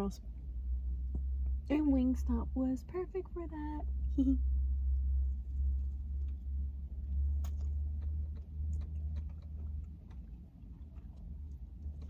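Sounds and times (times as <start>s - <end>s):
low hum: 0.0s - 12.0s
person chewing food: 5.6s - 12.0s.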